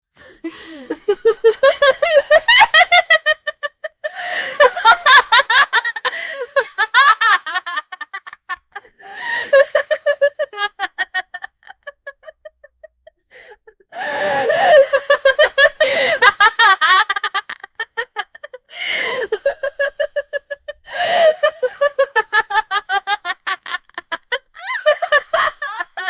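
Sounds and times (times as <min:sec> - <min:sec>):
breathy gasp: 0:00.2 - 0:01.0, 0:04.1 - 0:04.6, 0:08.8 - 0:09.6, 0:13.3 - 0:14.8, 0:15.8 - 0:16.2, 0:18.7 - 0:19.6, 0:20.9 - 0:21.6
woman laughing maniacally: 0:00.5 - 0:26.0.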